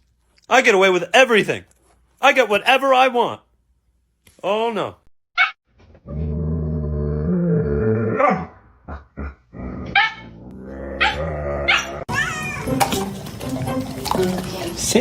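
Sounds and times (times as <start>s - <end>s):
dog barking high-pitched: 5.4s - 5.6s, 10.0s - 10.2s
dog growling: 6.0s - 12.1s.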